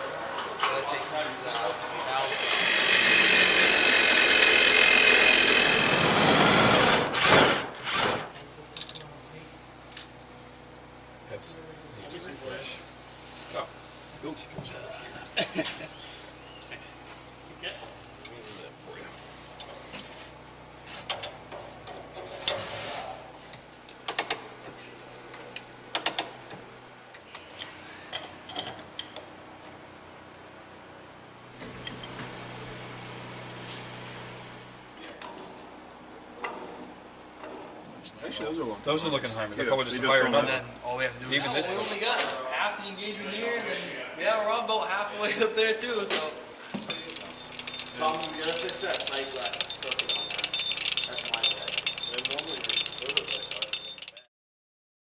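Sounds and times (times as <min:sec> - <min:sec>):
handheld power tool running: 0:02.0 - 0:08.3, 0:47.0 - 0:54.2.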